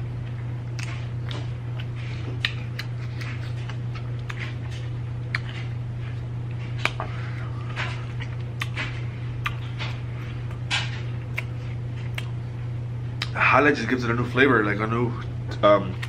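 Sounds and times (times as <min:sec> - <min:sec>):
steady low hum: 0:00.0 - 0:16.0
chewing crispy fried chicken: 0:00.2 - 0:12.6
wet mouth clicks: 0:00.8 - 0:04.5, 0:09.4 - 0:09.6, 0:11.3 - 0:12.4, 0:13.2 - 0:13.4.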